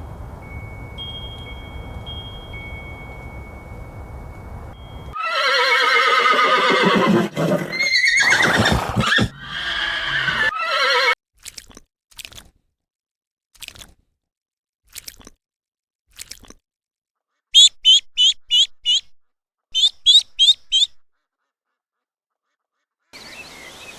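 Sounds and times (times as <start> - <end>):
horse whinnying: 5.2 - 11.2.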